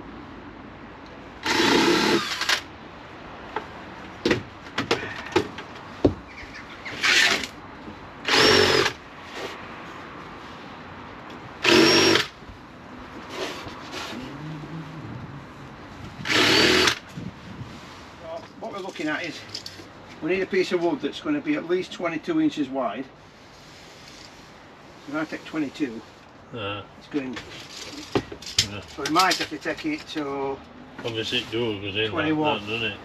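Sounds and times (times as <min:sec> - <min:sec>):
power drill running: 0:01.4 - 0:02.6, 0:08.3 - 0:09.0, 0:11.6 - 0:12.3, 0:16.2 - 0:17.0.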